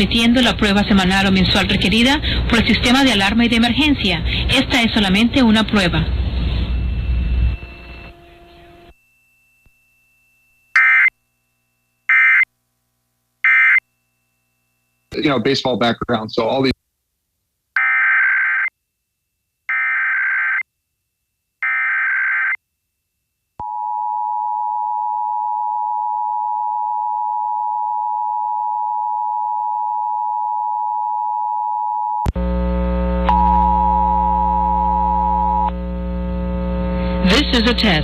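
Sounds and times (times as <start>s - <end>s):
buzzy hum with steady tones: 0.0s - 16.7s, 32.3s - 38.0s.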